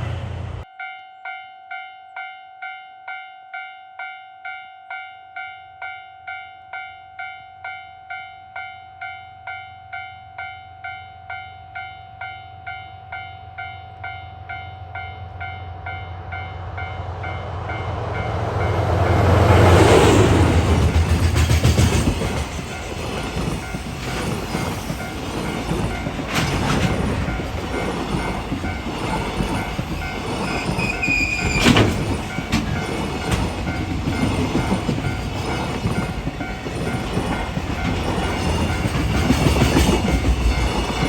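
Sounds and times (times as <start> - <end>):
train passing: 0.0 - 0.8, 10.8 - 41.0.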